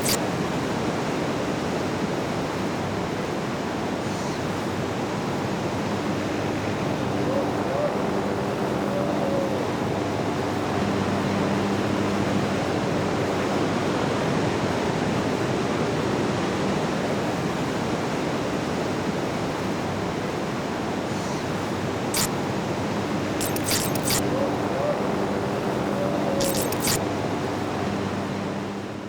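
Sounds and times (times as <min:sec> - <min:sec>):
sharp clicks: 0:23.4 - 0:24.2, 0:26.4 - 0:27.0.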